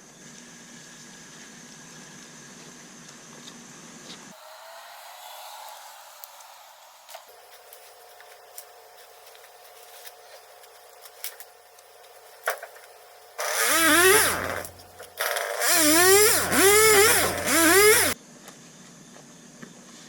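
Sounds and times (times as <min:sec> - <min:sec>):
chainsaw revving: 0:13.4 - 0:18.2.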